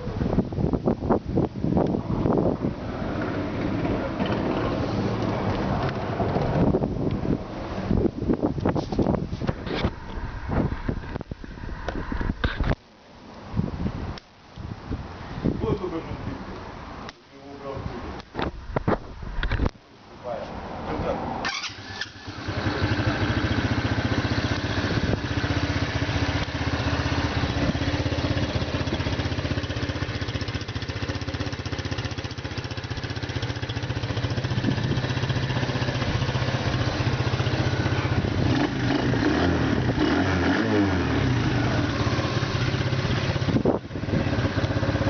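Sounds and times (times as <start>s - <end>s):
quad bike engine running: 21.8s - 45.0s.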